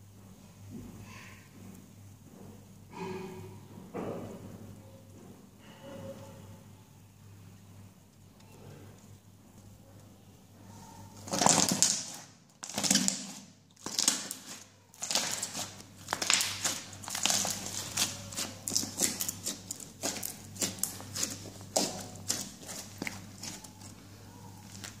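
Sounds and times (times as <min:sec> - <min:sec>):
slime squishing and crackling: 0:11.1 - 0:25.0.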